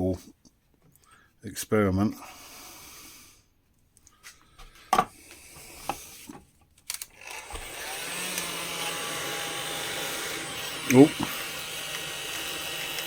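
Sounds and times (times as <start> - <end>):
heat gun fan blowing: 7.2 - 13.0.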